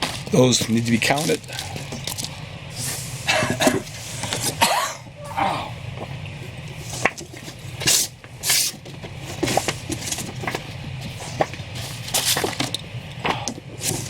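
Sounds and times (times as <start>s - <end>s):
steady low hum: 0.0s - 14.0s
comic books rustling and slapping: 6.8s - 14.0s.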